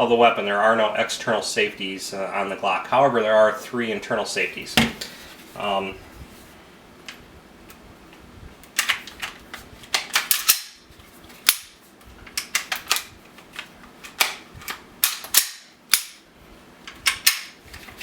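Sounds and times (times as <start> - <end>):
pistol parts clicking and clacking: 8.8 - 10.8, 11.4 - 16.2, 16.9 - 17.6.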